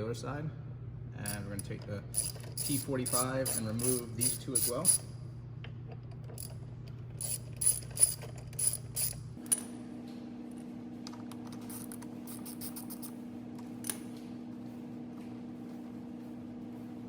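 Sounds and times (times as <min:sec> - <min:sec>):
steady low hum: 0:00.0 - 0:17.0
ratchet wrench clicking: 0:02.1 - 0:05.0, 0:07.2 - 0:09.2.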